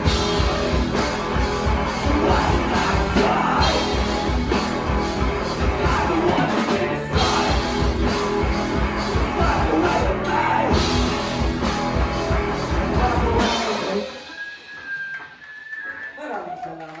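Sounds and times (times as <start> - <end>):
live rock band playing: 0.0 - 14.7.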